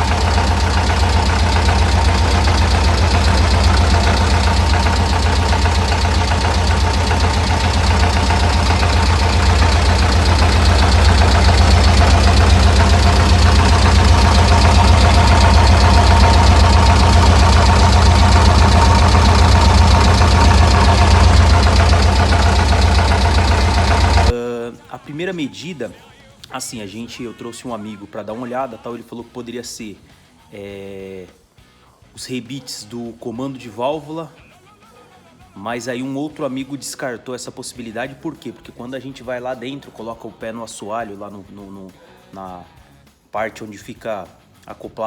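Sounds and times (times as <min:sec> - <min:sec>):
engine running with knocking: 0:00.0 - 0:24.4.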